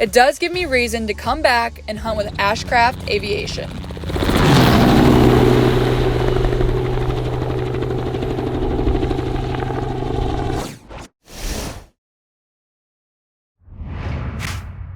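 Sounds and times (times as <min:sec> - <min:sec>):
helicopter running: 0:00.5 - 0:10.6.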